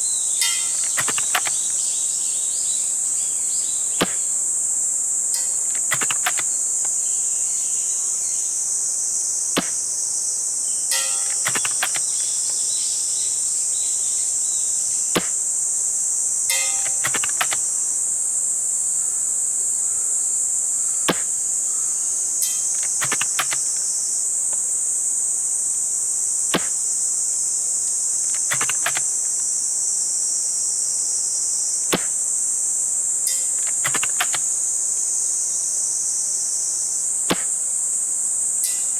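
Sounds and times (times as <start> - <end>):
insects chirping: 0.0 - 38.9
airsoft rifle shot snap: 0.4 - 1.8, 3.9 - 4.5, 5.4 - 7.0, 9.5 - 10.0, 10.9 - 12.6, 15.1 - 15.6, 16.5 - 17.8, 21.1 - 21.4, 22.6 - 23.9, 26.5 - 27.0, 28.3 - 29.4, 31.9 - 32.3, 33.3 - 34.6, 37.3 - 37.7
rifle mechanism clicks: 0.4 - 1.9, 5.4 - 7.0, 10.9 - 12.7, 16.5 - 17.8, 22.4 - 24.6, 28.3 - 29.4, 33.3 - 34.6.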